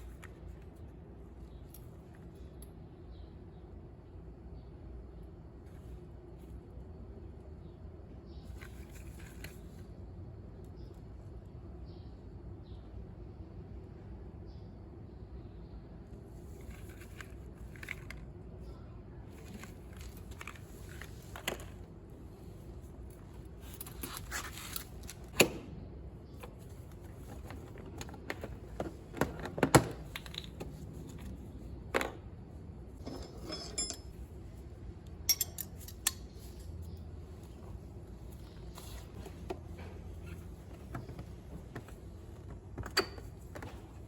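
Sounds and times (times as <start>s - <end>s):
metal hand tools clinking: 33.0s - 34.2s, 35.3s - 36.4s.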